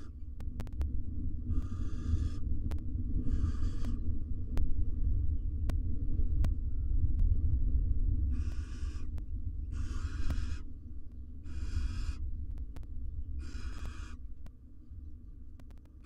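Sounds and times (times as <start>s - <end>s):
low rumble: 0.0s - 16.0s
barn owl hissing calls: 1.5s - 2.4s, 3.2s - 4.0s, 8.3s - 9.1s, 9.7s - 10.7s, 11.4s - 12.2s, 13.4s - 14.2s.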